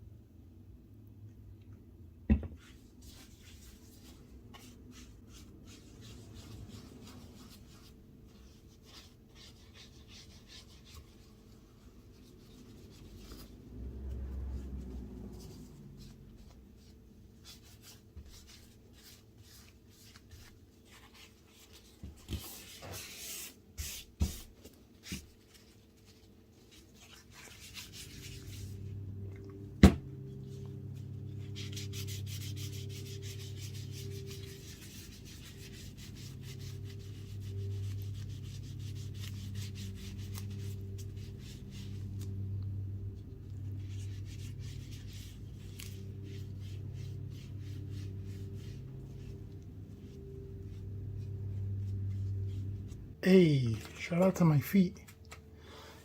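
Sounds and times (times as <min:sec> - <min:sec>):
low hum: 0:11.1 - 0:17.1, 0:26.9 - 0:54.0.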